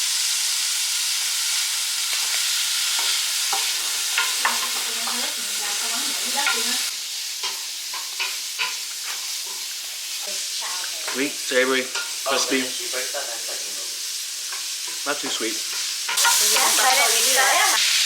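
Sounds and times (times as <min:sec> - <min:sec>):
wings sizzling in hot oil: 0:00.0 - 0:18.0.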